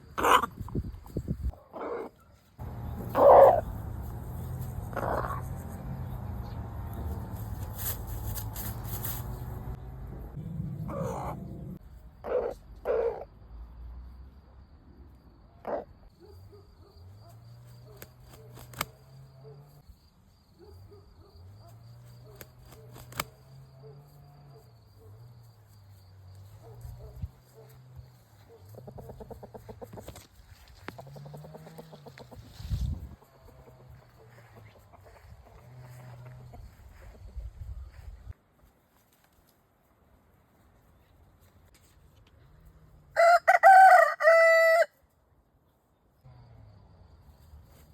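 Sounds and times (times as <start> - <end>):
chickens squawking: 0.2 - 0.8, 1.8 - 5.8, 10.8 - 13.2
low wavering hum: 8.8 - 11.8.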